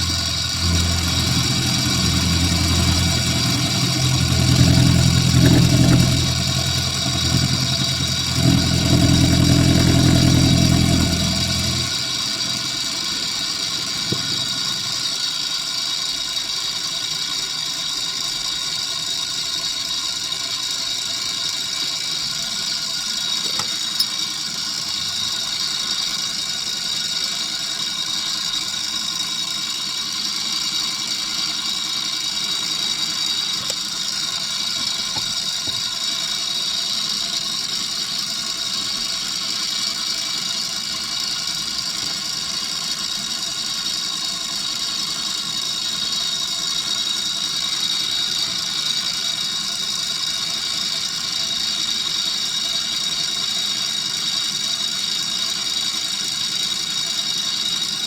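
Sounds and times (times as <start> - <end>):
milling machine whine: 0.0 - 15.6.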